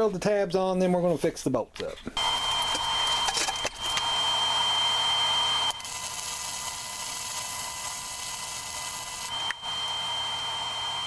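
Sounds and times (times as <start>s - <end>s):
welding hiss with faint whine: 2.2s - 11.0s.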